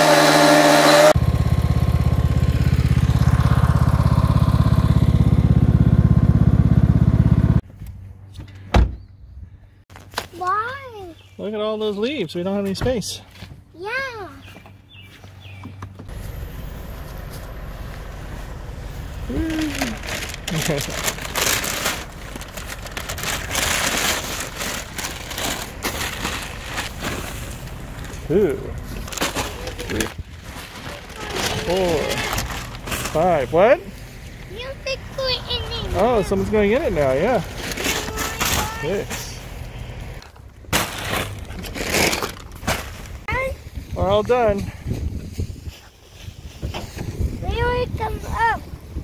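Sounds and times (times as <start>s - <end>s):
lawn mower engine running: 0.0s - 7.6s, 15.8s - 30.2s, 30.9s - 40.2s
dry leaves crunching: 16.1s - 39.8s, 40.7s - 43.9s.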